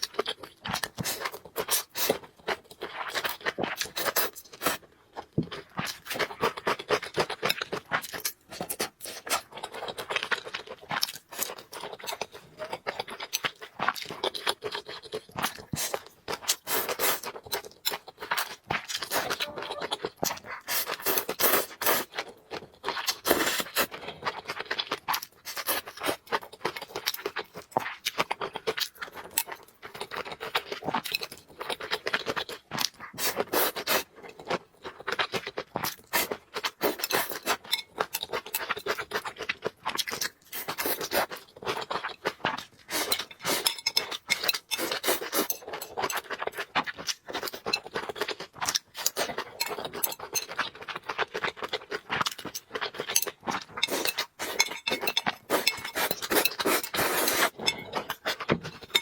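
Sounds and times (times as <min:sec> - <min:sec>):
wet chewing mouth sounds: 0:00.0 - 0:59.0
utensils clinking against bowl: 0:43.0 - 0:46.3, 0:53.0 - 0:58.2.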